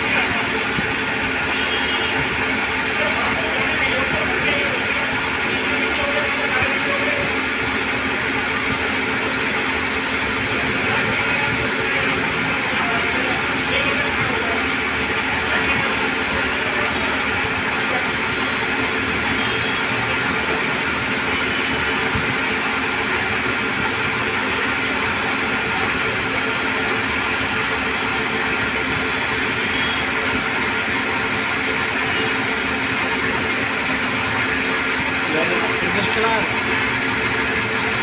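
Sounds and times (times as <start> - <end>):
lathe running: 0.0 - 38.0.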